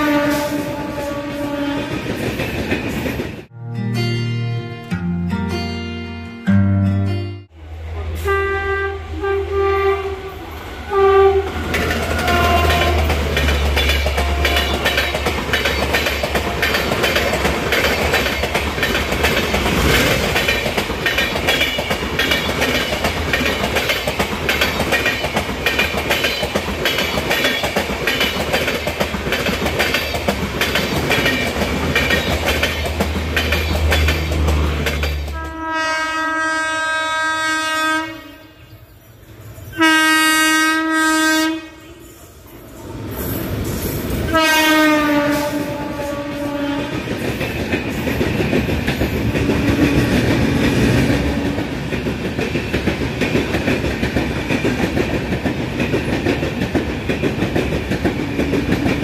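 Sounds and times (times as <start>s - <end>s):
train horn blasts: 0.0s - 2.1s, 8.0s - 13.4s, 14.1s - 15.2s, 35.3s - 38.8s, 39.7s - 42.2s, 44.3s - 47.1s
heavy train rumble: 0.0s - 3.5s, 7.4s - 38.0s, 38.6s - 59.0s
train wheels clattering over rail joints: 11.7s - 35.5s.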